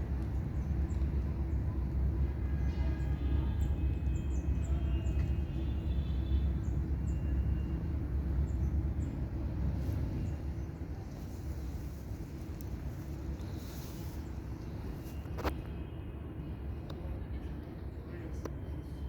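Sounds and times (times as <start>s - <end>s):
steady low rumble: 0.0s - 2.6s, 6.4s - 15.8s.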